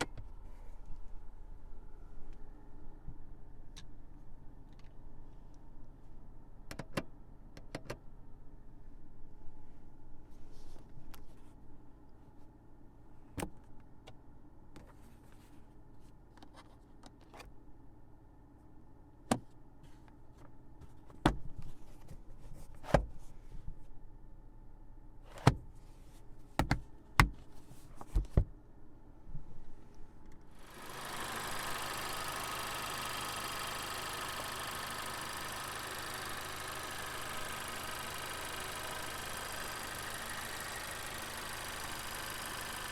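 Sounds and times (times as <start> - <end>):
car engine idling: 30.6 - 42.9.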